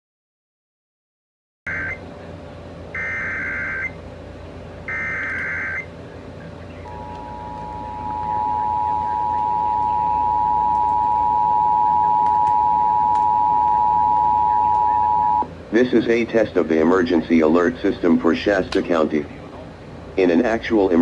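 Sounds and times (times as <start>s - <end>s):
steady two-tone alert signal: 1.7s - 2.0s, 3.0s - 4.0s, 4.9s - 5.9s, 6.8s - 15.5s.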